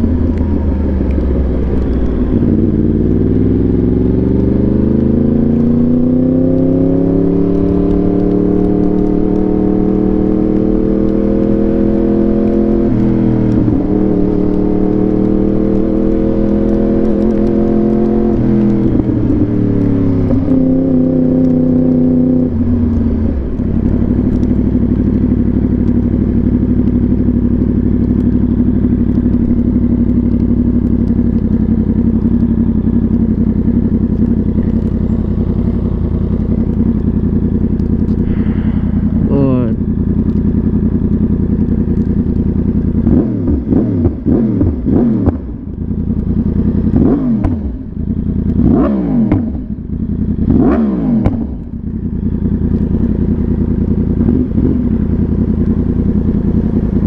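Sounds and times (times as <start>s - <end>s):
motorcycle engine idling: 0.0s - 3.8s, 22.6s - 43.1s, 45.5s - 47.0s, 47.8s - 48.7s, 49.6s - 50.6s, 51.6s - 57.0s
motorcycle engine revving: 0.0s - 57.0s.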